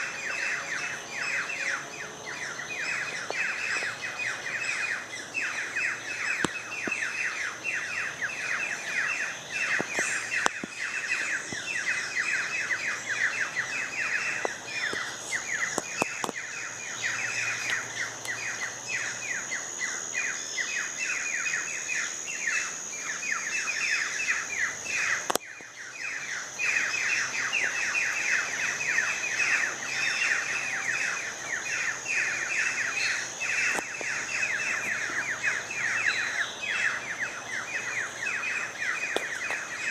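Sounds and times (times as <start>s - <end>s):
birds chattering: 0.0s - 39.9s
thin steady high tone: 0.0s - 39.9s.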